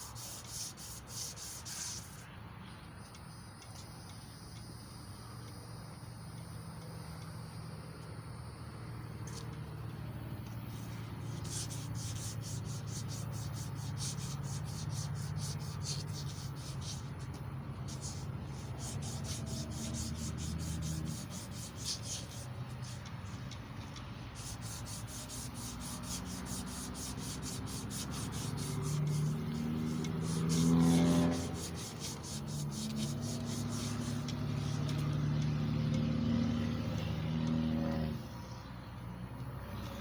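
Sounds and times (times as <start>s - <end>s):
emery cloth rubbing on metal: 0.0s - 2.3s, 10.6s - 23.4s, 24.3s - 35.2s.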